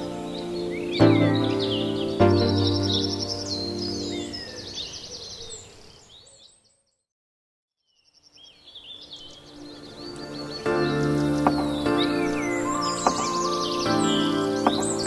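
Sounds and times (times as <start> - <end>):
background music: 0.0 - 4.7, 8.9 - 15.0
birds chirping: 0.0 - 7.0, 7.9 - 15.0.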